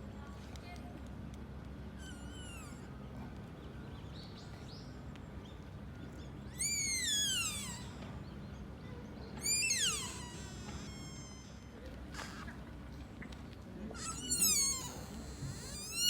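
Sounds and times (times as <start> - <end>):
deer fawn calling: 2.0 - 2.9, 6.4 - 8.1, 9.4 - 12.4, 14.0 - 16.0.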